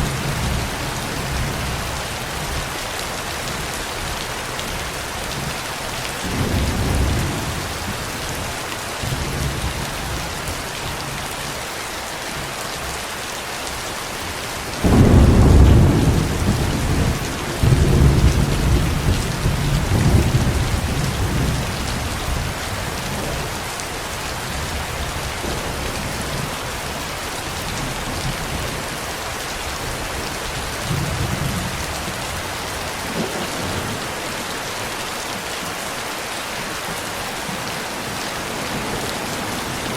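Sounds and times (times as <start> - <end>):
heavy rain: 0.0 - 39.9
thunder crack and rumble: 6.2 - 8.4, 14.8 - 23.5
low thunder rumbles: 6.2 - 10.3, 14.8 - 23.5.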